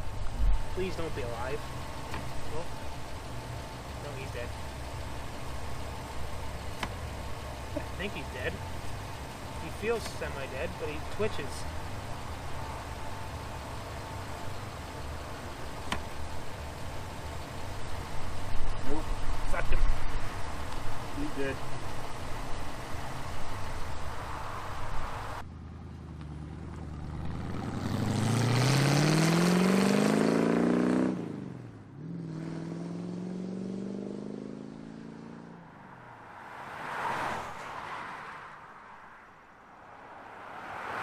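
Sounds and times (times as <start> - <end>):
car engine accelerating hard: 0.0 - 37.8
car whooshing past: 26.4 - 41.0.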